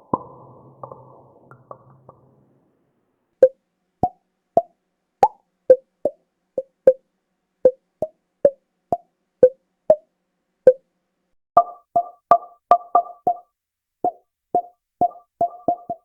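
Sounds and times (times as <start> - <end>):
soft pop sound effects: 0.0 - 2.5, 11.6 - 13.4, 14.0 - 16.0.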